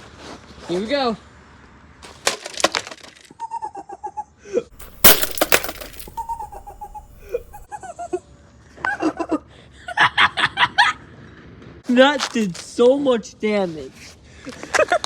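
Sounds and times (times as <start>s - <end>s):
brick crashing onto coffee maker: 2.1s - 3.2s, 4.8s - 7.7s
plastic breaking and clattering: 2.1s - 3.3s, 4.8s - 7.7s.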